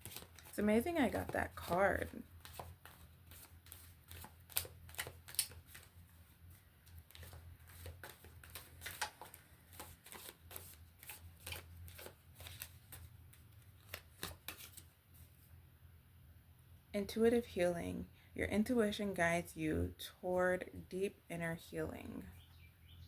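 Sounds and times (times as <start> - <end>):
cards being shuffled: 0.0 - 14.9.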